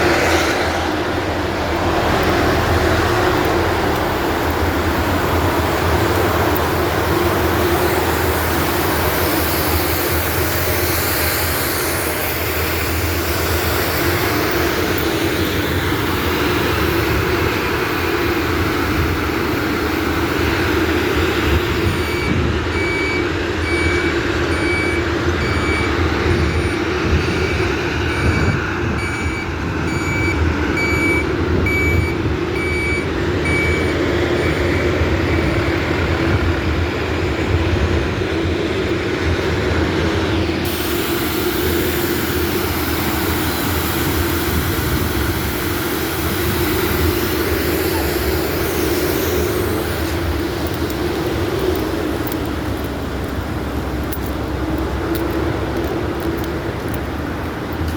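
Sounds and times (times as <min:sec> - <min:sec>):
heavy diesel machinery humming: 0:00.0 - 0:57.9
reverse alarm beeping: 0:16.7 - 0:18.6, 0:21.0 - 0:35.3.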